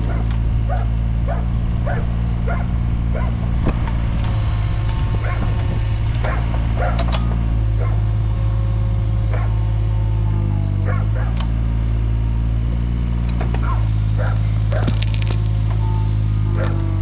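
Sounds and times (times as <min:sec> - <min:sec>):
dog barking: 0:00.0 - 0:03.4, 0:05.2 - 0:05.5, 0:06.2 - 0:07.1, 0:07.8 - 0:08.1, 0:09.3 - 0:09.6, 0:10.8 - 0:11.4, 0:13.6 - 0:15.0, 0:16.5 - 0:16.9
diesel engine running: 0:00.0 - 0:17.0.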